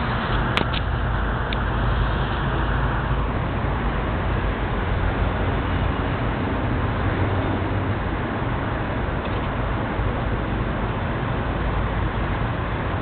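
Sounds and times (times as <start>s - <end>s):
city traffic rumble: 0.0s - 13.0s
small clicks: 9.2s - 9.6s.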